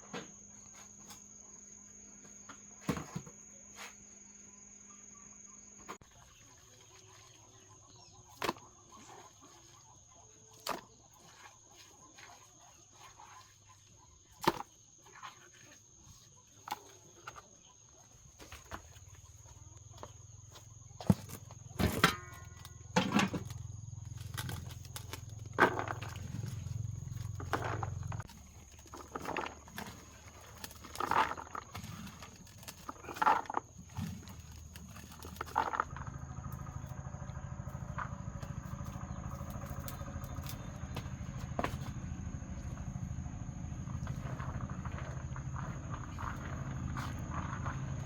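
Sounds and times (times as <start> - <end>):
low rumble: 35.7 - 48.0.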